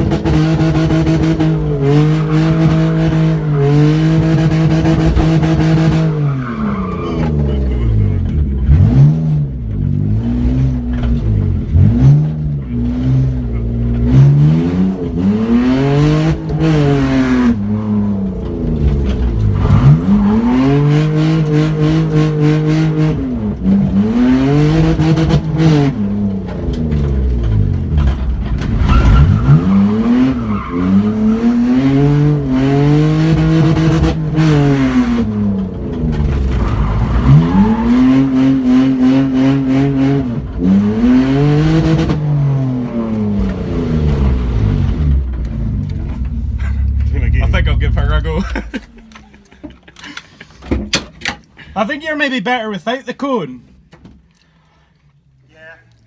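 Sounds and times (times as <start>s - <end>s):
car engine revving hard: 0.0s - 49.1s
tyres skidding and squealing: 0.0s - 53.8s.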